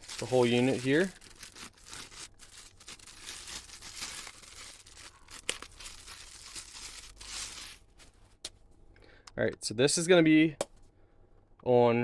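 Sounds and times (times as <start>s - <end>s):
plastic packaging crinkling and tearing: 0.0s - 8.2s.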